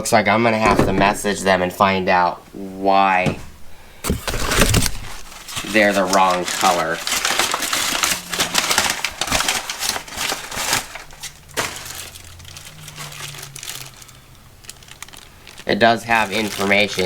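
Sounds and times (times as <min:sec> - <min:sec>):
paper packaging crinkling: 0:04.0 - 0:17.0.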